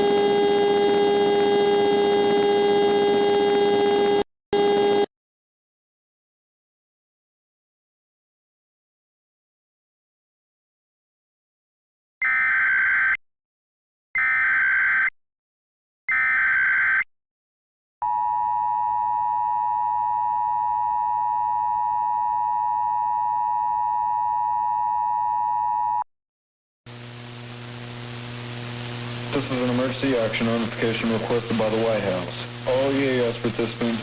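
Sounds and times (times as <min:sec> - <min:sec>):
low hum: 0:00.0 - 0:05.1, 0:26.9 - 0:29.9
screeching data tones: 0:00.0 - 0:05.1
two-tone attention signal: 0:00.0 - 0:05.1.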